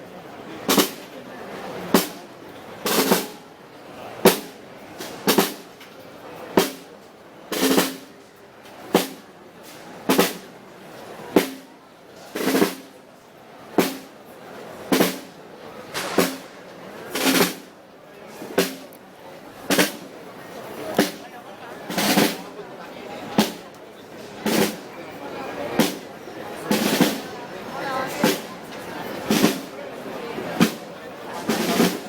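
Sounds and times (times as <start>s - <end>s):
marching snare drums: 0.7s - 1.1s, 1.9s - 2.2s, 2.8s - 3.4s, 4.2s - 5.8s, 6.6s - 6.9s, 7.5s - 8.2s, 8.9s - 9.3s, 10.0s - 10.5s, 11.3s - 13.0s, 13.7s - 14.2s, 14.8s - 17.7s, 18.4s - 18.9s, 19.7s - 20.1s, 20.9s - 21.2s, 21.9s - 22.5s, 23.3s - 23.6s, 24.2s - 24.9s, 25.8s - 26.1s, 26.7s - 27.3s, 28.1s - 28.5s, 29.2s - 29.7s, 30.6s - 32.0s.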